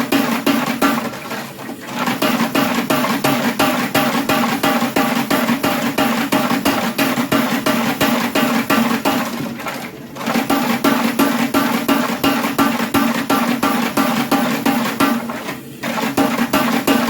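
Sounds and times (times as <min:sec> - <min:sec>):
power hammer striking steel: 0:00.0 - 0:01.2, 0:02.1 - 0:09.2, 0:10.5 - 0:15.3.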